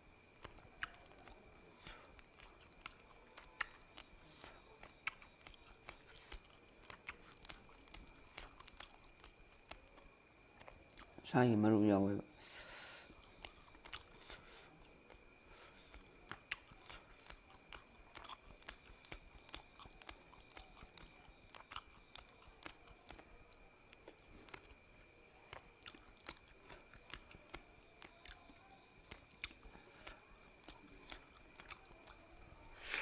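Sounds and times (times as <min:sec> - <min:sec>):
faint high whine: 0:00.0 - 0:33.0
person chewing: 0:00.4 - 0:11.2, 0:12.8 - 0:33.0
mouth smacks: 0:15.9 - 0:23.3.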